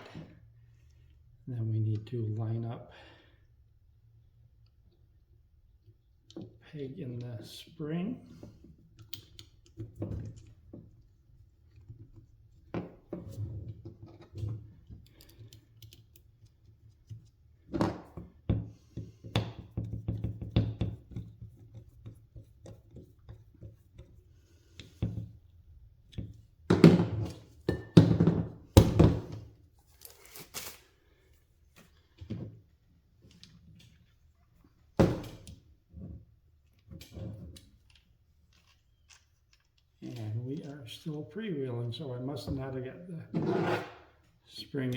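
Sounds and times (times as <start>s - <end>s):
small metal parts clicking and knocking: 14.8s - 16.6s.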